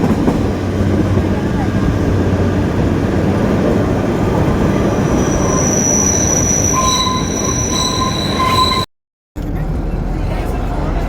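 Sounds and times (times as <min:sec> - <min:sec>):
train wheels rumbling on rails: 0:00.0 - 0:11.0
high metallic wheel squeal: 0:04.7 - 0:08.9.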